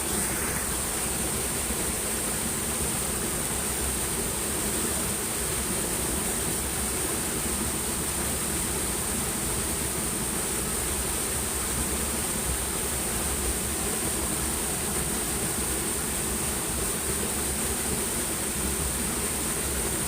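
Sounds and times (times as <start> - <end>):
high-pitched hiss: 0.0 - 8.1.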